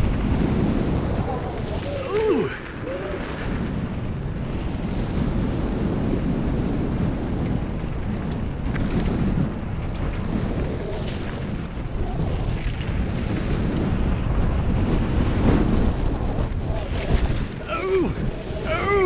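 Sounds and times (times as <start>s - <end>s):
tyres rumbling on dirt: 0.0s - 19.0s
wind buffeting microphone: 0.0s - 19.0s
light clicks: 8.7s - 9.2s.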